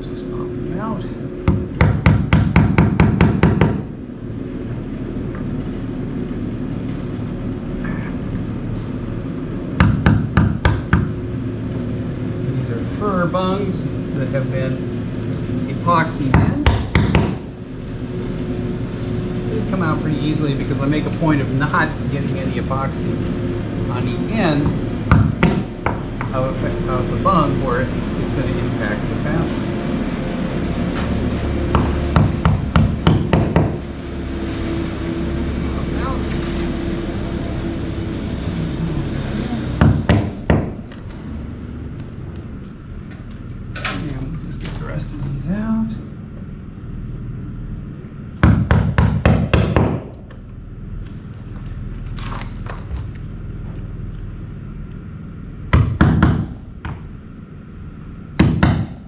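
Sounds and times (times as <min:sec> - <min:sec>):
steady hum: 0:00.0 - 0:59.0
loud knocks on wooden planks: 0:01.4 - 0:03.9, 0:09.8 - 0:11.2, 0:16.4 - 0:17.5, 0:25.1 - 0:26.3, 0:31.7 - 0:33.8, 0:39.8 - 0:40.8, 0:48.4 - 0:50.1, 0:55.7 - 0:57.0, 0:58.4 - 0:59.0.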